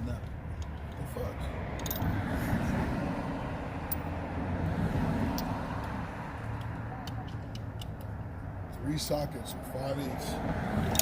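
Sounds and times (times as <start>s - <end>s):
metal tools clicking: 0.2s - 2.1s.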